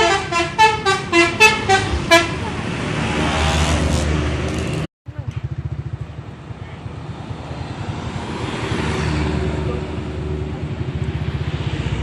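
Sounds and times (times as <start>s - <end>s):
bus engine running: 0.0s - 12.0s.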